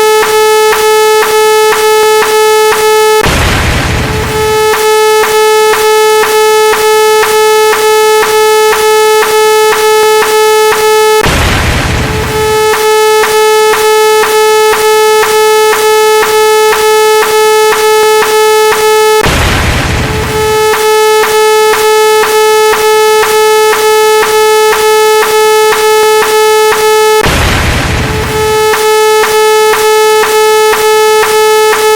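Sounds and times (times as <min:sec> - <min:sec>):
electronic beeps: 0:00.0 - 0:03.3, 0:04.0 - 0:19.3, 0:20.0 - 0:31.9
buzzy synthesized tone: 0:00.0 - 0:31.9
loud burst of noise: 0:00.0 - 0:31.9
noise burst with low rumble: 0:03.2 - 0:05.5, 0:11.2 - 0:13.5, 0:19.2 - 0:20.9, 0:27.2 - 0:29.0.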